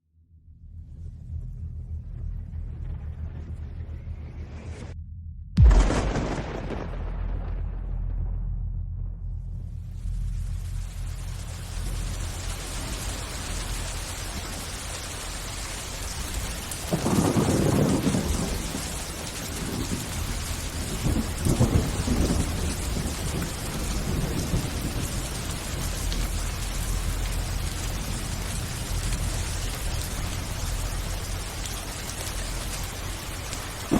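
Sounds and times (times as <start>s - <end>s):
thunder: 5.6s - 14.8s, 16.1s - 32.2s
heavy rain hiss: 10.0s - 33.9s.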